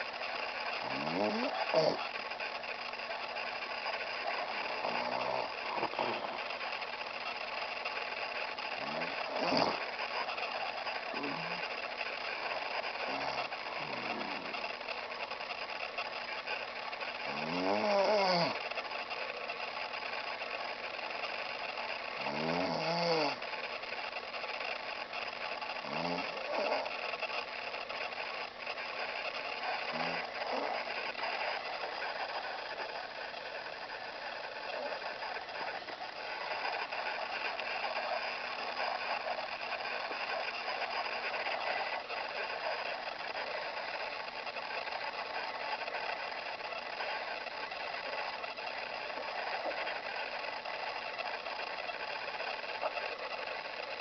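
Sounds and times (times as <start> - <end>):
man snoring: 0.8 - 2.1, 4.7 - 6.5, 8.8 - 10.0, 11.1 - 11.7, 13.0 - 14.7, 17.3 - 18.6, 22.2 - 23.4, 25.8 - 26.9, 29.6 - 30.9.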